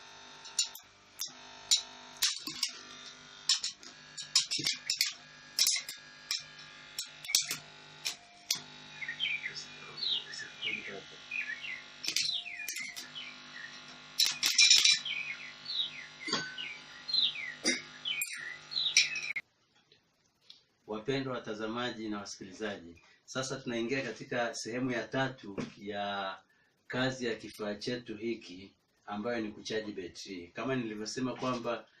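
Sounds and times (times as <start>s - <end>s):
birds chirping: 8.5s - 19.4s.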